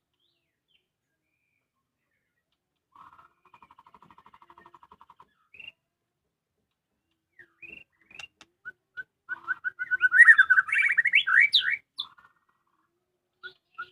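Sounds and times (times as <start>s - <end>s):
bird singing whistled notes: 5.3s - 5.8s, 7.3s - 12.1s, 13.4s - 13.9s.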